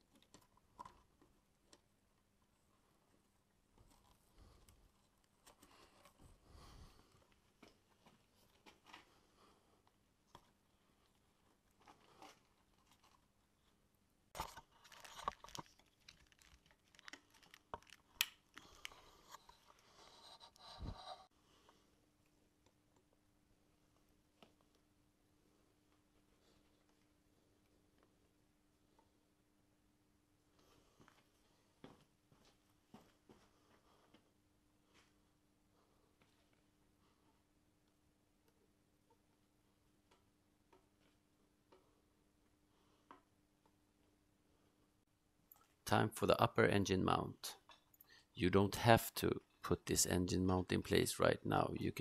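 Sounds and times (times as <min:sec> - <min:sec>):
rustling and crinkling: 0:02.7 - 0:21.8.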